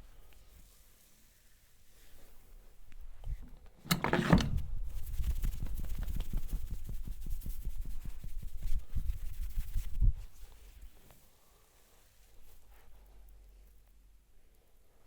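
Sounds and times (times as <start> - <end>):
soft rhythmic tapping on body: 5.0 - 11.3.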